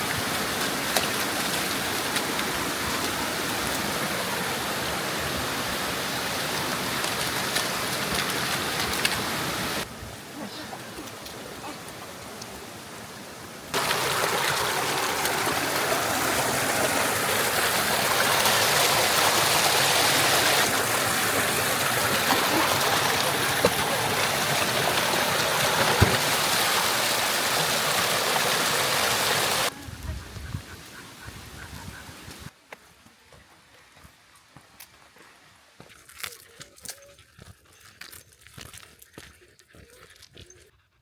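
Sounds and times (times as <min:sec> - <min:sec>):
river rushing and splashing: 0:00.0 - 0:29.8.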